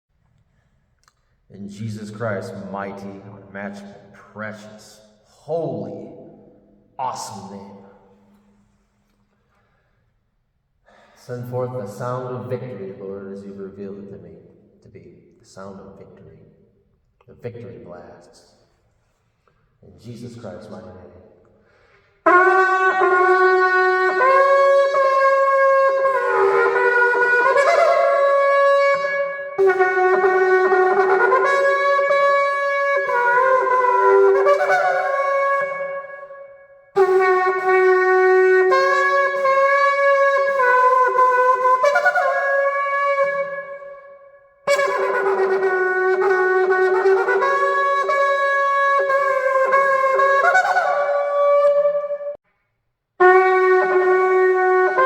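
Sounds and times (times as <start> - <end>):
shofar blasts: 22.2 - 52.4, 53.2 - 55.0.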